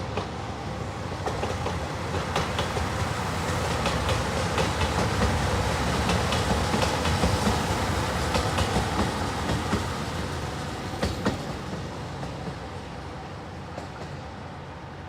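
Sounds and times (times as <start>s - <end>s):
train running noise: 0.0s - 15.0s
train wheels clicking over rail joints: 1.2s - 12.7s.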